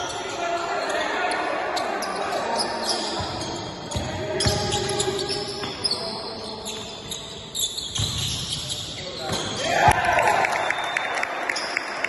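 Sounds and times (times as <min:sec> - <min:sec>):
basketball bouncing on court: 0:03.2 - 0:05.9, 0:07.9 - 0:10.1.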